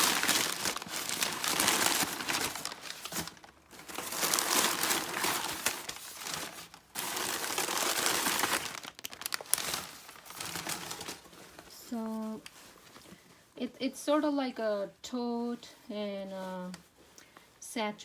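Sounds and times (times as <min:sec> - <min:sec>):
packing material crinkling: 0:00.0 - 0:13.2.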